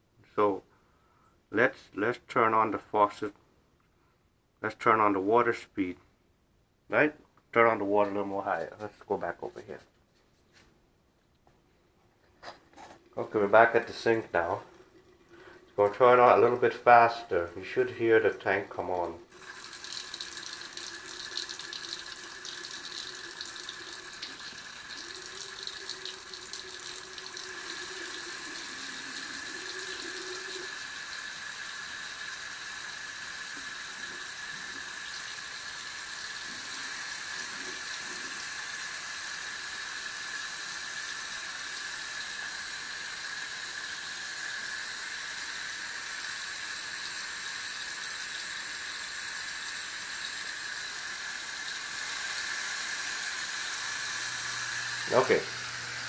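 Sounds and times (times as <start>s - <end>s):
faucet running water into sink: 13.0s - 56.0s.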